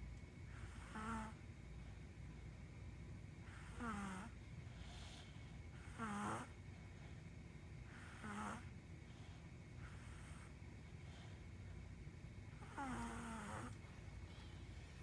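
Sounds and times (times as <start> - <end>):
faint breaths: 3.4 - 11.9, 12.6 - 15.0.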